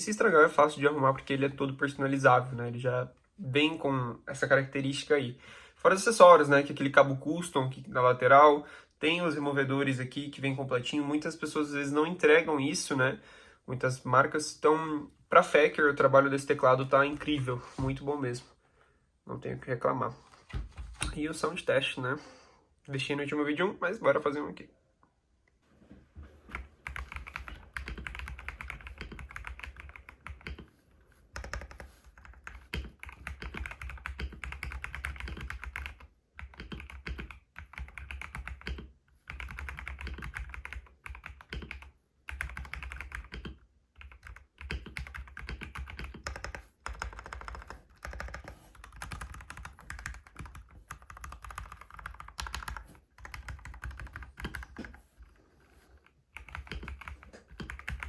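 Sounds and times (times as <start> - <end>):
mechanical keyboard typing: 26.5 - 30.7, 31.3 - 55.1, 56.3 - 58.0.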